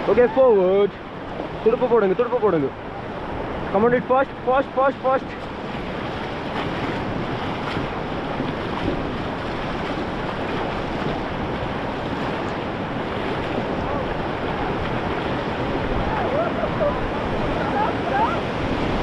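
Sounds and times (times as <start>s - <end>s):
rapids rushing: 0.0s - 19.0s
wind buffeting microphone: 5.2s - 19.0s.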